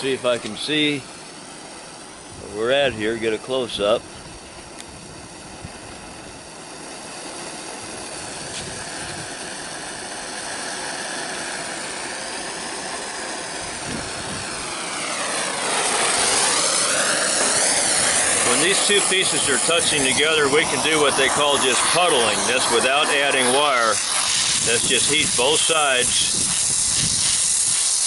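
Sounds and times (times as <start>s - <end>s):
torch flame hissing: 0.0s - 28.0s
swirling whoosh: 13.6s - 24.8s.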